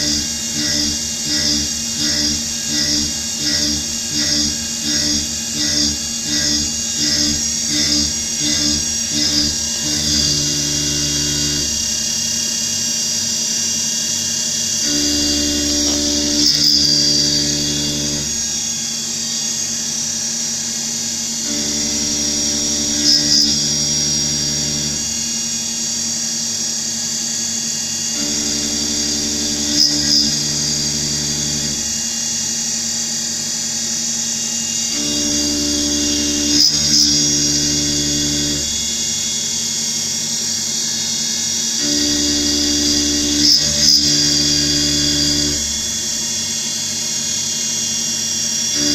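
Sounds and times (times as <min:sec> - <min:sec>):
machine drive tones: 0:00.0 - 0:12.2, 0:14.8 - 0:19.1, 0:21.4 - 0:25.4, 0:28.2 - 0:32.1, 0:34.9 - 0:39.3, 0:41.8 - 0:46.3
milling machine cutting whine: 0:00.0 - 0:48.9.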